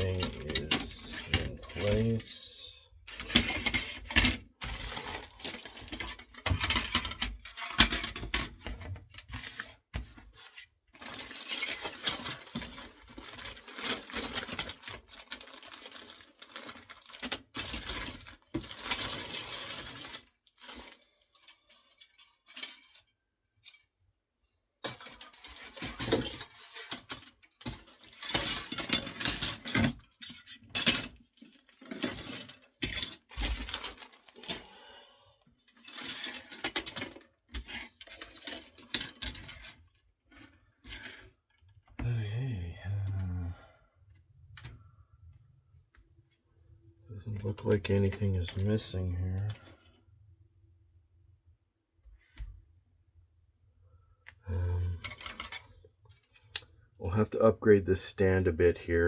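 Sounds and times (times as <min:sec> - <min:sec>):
plastic parts clacking and rattling: 0:00.0 - 0:24.0, 0:24.8 - 0:34.8, 0:35.5 - 0:42.0, 0:54.8 - 0:56.7.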